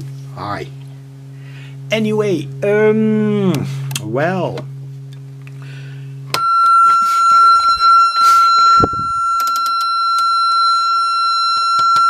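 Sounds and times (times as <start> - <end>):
low hum: 0.0 - 12.0
high-pitched test tone: 6.3 - 12.0
scattered clicks: 9.4 - 10.3.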